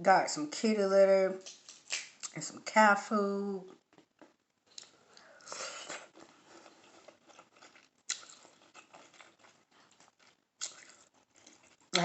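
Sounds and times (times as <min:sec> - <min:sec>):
close-miked chewing: 0:03.6 - 0:12.0.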